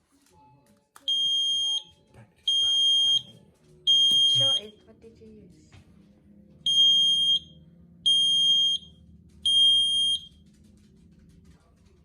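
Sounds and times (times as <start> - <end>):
smoke alarm beeping: 1.1 - 3.3, 3.9 - 4.8, 6.7 - 10.3.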